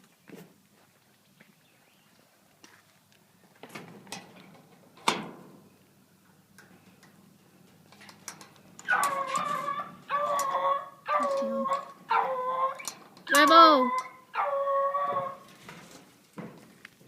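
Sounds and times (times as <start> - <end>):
hound baying: 8.8 - 12.9, 13.7 - 15.5.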